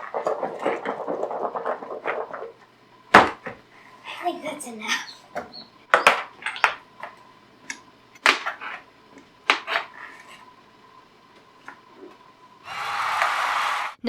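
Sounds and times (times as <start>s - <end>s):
faint steady hum: 0.0s - 14.0s
utensils and dishes clinking: 5.0s - 12.7s.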